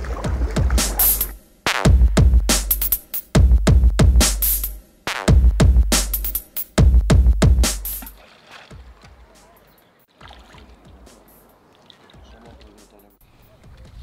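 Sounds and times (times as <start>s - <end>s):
electronic music with drum-machine beat: 0.0s - 8.2s, 10.7s - 11.5s.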